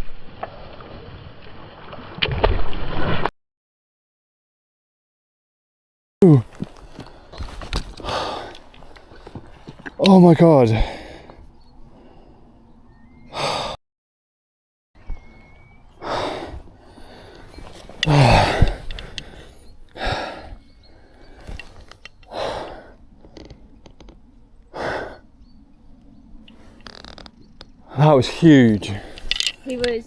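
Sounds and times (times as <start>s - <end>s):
man groaning: 6.2s - 6.6s, 18.0s - 18.8s
man breathing hard: 6.3s - 12.6s, 13.3s - 13.8s, 15.3s - 23.6s, 24.7s - 25.4s, 28.8s - 29.7s.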